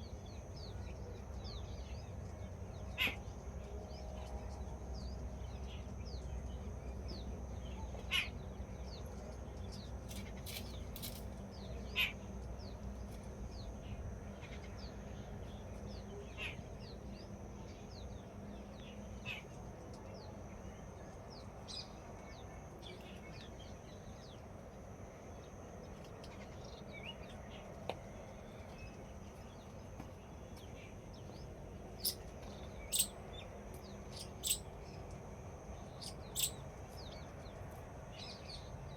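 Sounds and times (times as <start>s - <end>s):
birds chirping: 28.6s - 35.1s, 35.8s - 37.5s
harsh bird calls: 34.1s - 34.6s, 36.0s - 36.6s.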